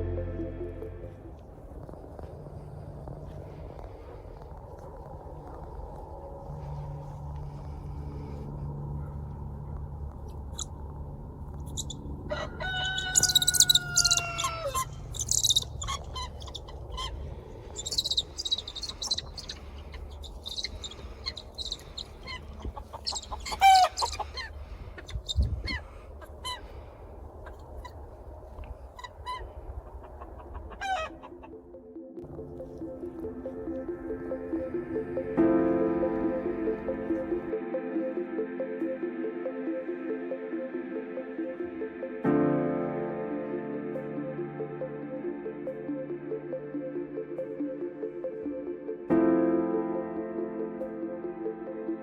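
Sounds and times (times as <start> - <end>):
low steady hum: 0.0 - 42.0
rooster crowing: 12.3 - 15.6
high bird chirps: 13.0 - 24.5
chicken clucks: 20.2 - 25.8, 29.0 - 31.6.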